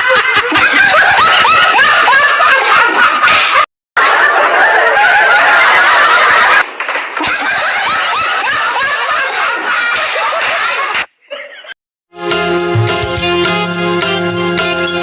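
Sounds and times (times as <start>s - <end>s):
high-pitched laughter: 0.0s - 6.6s, 7.2s - 11.8s.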